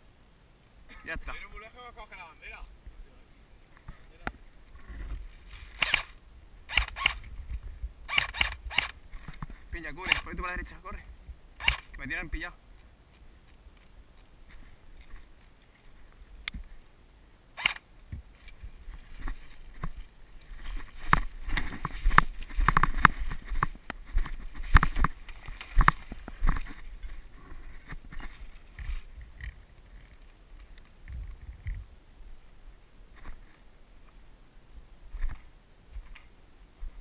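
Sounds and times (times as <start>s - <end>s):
knocks scuffs and rustles of gear: 4.8s - 6.0s, 18.2s - 29.2s.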